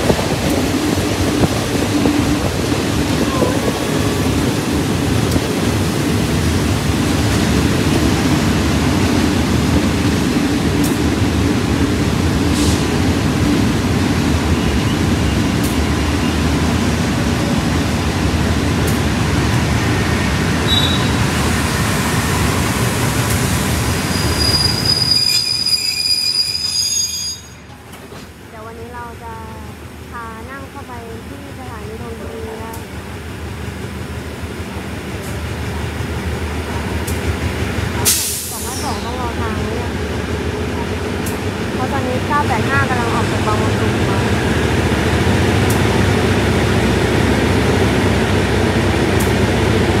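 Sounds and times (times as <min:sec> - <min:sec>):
train wheels rumbling: 0:00.0 - 0:50.0
high-pitched wheel squeal: 0:24.1 - 0:27.6.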